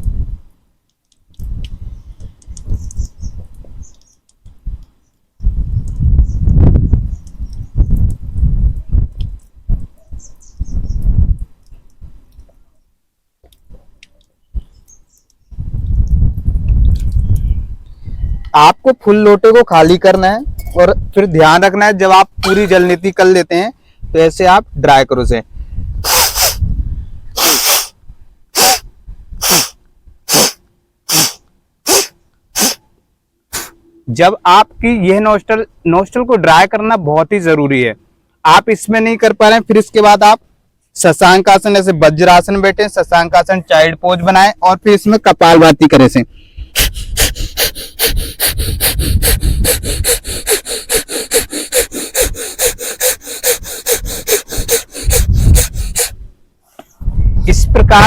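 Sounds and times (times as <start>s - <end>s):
forceful nasal exhalations: 26.0s - 26.7s, 27.3s - 32.9s, 33.5s - 33.8s, 46.4s - 57.0s.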